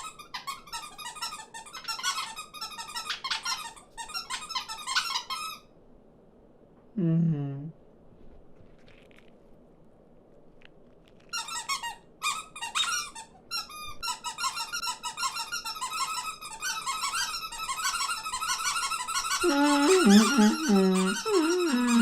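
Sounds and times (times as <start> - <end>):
low squawking voices: 19.4 - 22.0.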